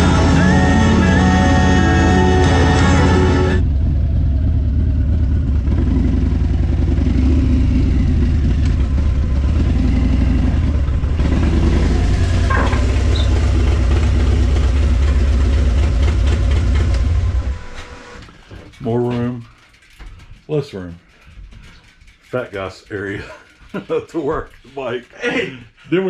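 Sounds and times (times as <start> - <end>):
motorcycle engine rumbling: 0.0 - 20.4.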